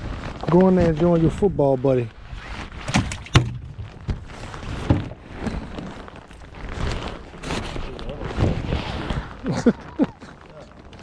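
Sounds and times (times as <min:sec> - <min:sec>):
wind noise: 0:00.0 - 0:10.2
irregular knocks and thumps: 0:02.8 - 0:05.2.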